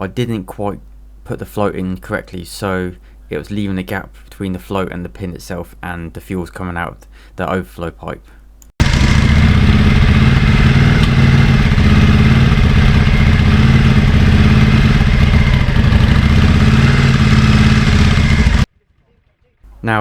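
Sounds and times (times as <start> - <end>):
motorcycle engine idling: 8.8 - 19.0.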